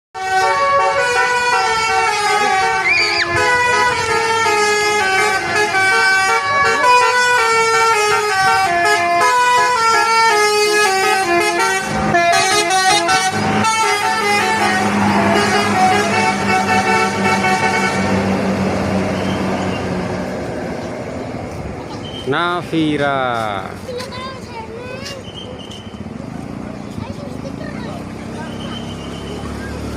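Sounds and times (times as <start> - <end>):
bus horn playing a melody: 0.2 - 20.2.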